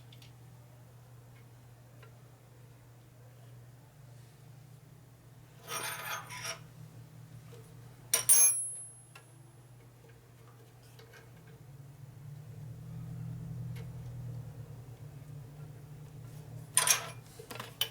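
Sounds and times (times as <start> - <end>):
metal clank with ringing: 8.2 - 9.0.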